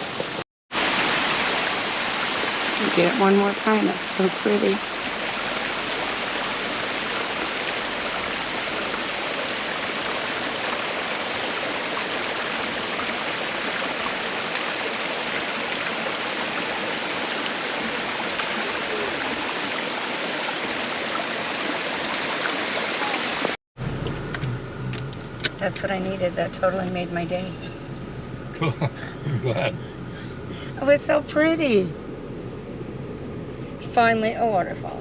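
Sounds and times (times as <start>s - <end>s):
waterfall rushing: 0.0s - 23.6s.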